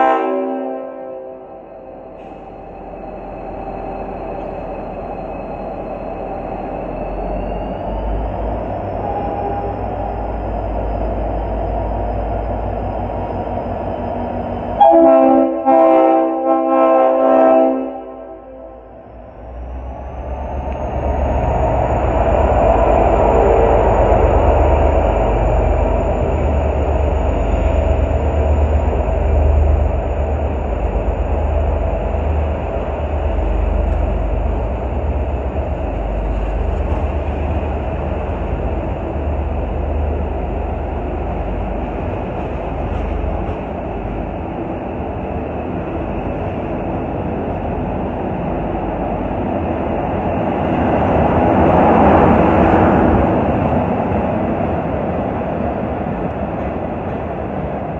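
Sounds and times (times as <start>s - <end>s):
locomotive engine rumble: 18.8s - 57.9s
train carriages rolling: 20.0s - 47.9s.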